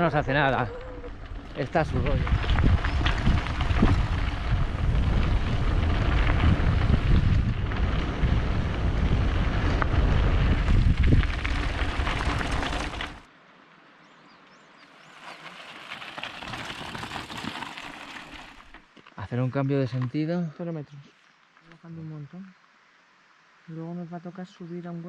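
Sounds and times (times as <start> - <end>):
wind buffeting microphone: 0.0 - 13.2.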